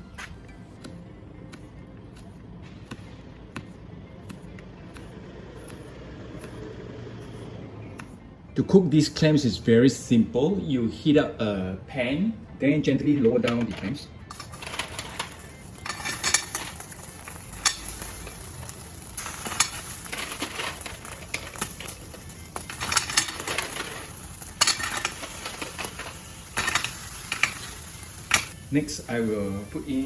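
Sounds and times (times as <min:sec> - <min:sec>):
clam shells clattering in a pan: 0:14.3 - 0:28.6
steady sizzle: 0:14.3 - 0:30.0.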